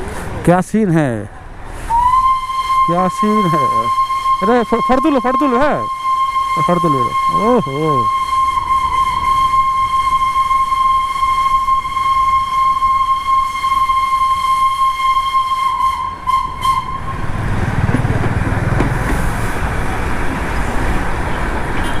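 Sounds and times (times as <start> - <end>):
locomotive low rumble: 0.0 - 22.0
locomotive steam hiss: 1.6 - 5.3
steam whistle: 1.8 - 17.4.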